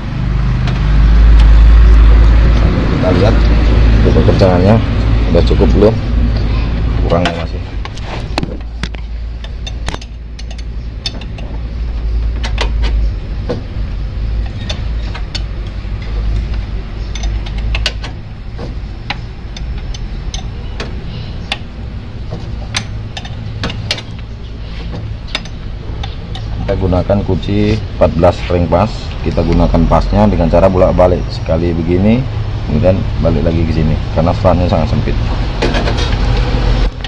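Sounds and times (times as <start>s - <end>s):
low rumble: 0.0s - 21.1s
wrench clinking against bolt: 8.6s - 11.6s, 14.4s - 21.7s, 22.3s - 26.7s.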